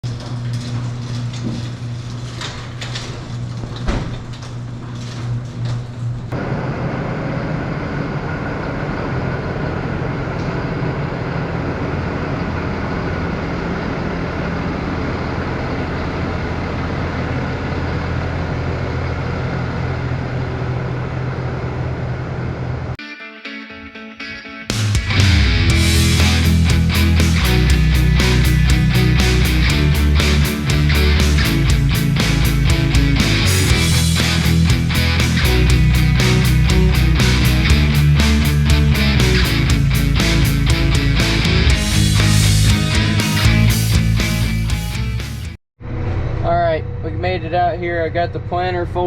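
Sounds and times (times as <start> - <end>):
farm vehicle engine running: 6.1 - 23.0, 25.0 - 49.0.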